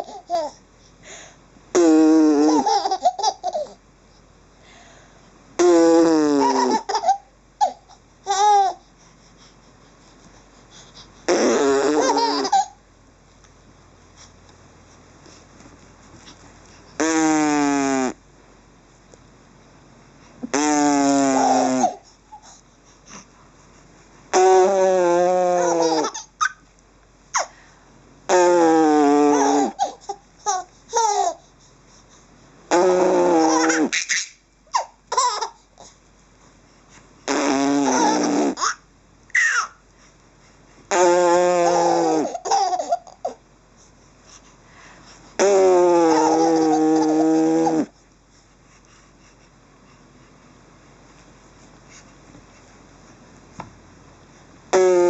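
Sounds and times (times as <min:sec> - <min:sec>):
baby laughing: 0:02.3 - 0:03.8, 0:06.4 - 0:08.8, 0:11.8 - 0:12.8, 0:25.5 - 0:26.6, 0:29.3 - 0:31.4, 0:33.1 - 0:35.6, 0:37.8 - 0:38.8, 0:39.4 - 0:39.8, 0:41.6 - 0:43.4, 0:45.4 - 0:47.9.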